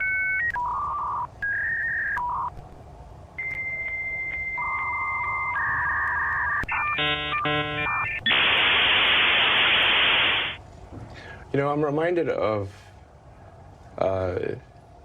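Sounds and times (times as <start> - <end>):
dial-up modem beeps and tones: 0.0 - 2.5, 3.4 - 10.6
buzzy warbling modem handshake: 6.6 - 10.6.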